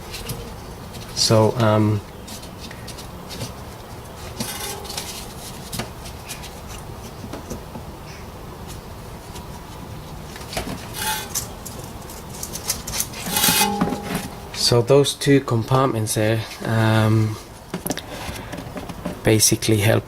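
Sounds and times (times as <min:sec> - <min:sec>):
plastic rustling: 0:02.2 - 0:06.8.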